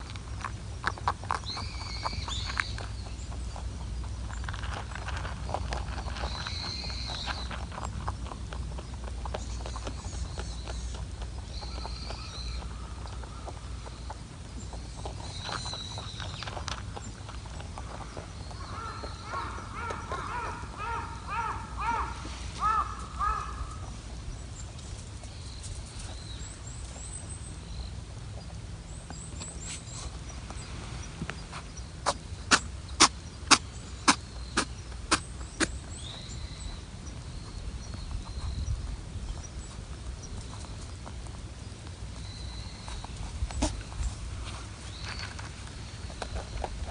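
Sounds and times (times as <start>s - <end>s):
rabbit sneezing: 32.0s - 35.8s, 43.6s - 44.0s.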